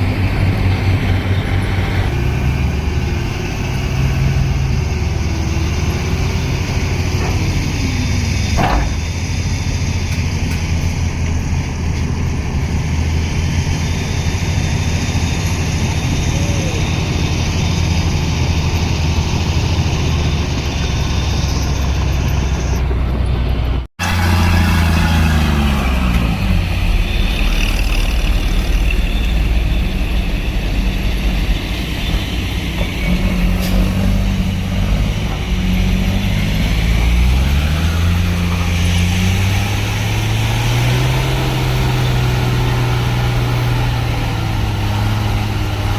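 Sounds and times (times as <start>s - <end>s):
diesel truck engine revving: 0.0s - 45.9s.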